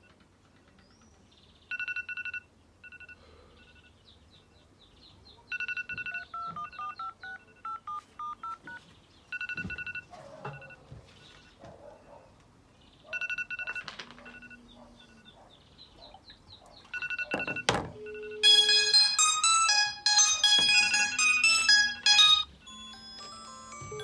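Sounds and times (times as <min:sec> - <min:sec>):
phone ringtone beeps: 0:01.7 - 0:04.0, 0:05.5 - 0:10.8, 0:13.2 - 0:15.2, 0:16.9 - 0:24.0
chirps: 0:14.3 - 0:17.4
stepped melody of short beeps: 0:17.0 - 0:24.0.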